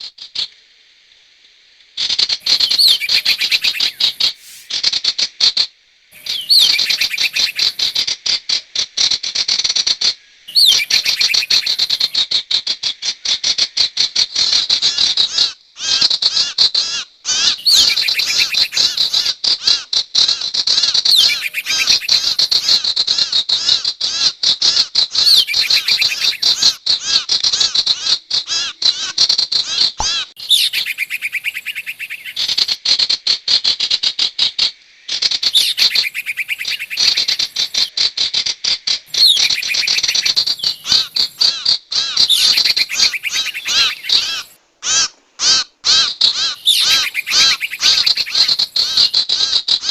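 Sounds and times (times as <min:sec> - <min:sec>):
rapid high-pitched bird chirping: 0:02.4 - 0:04.7, 0:06.2 - 0:08.0, 0:10.5 - 0:12.2, 0:17.6 - 0:19.3, 0:21.1 - 0:22.8, 0:25.2 - 0:26.8, 0:30.0 - 0:32.8, 0:35.2 - 0:38.1, 0:39.0 - 0:44.6, 0:46.3 - 0:49.2.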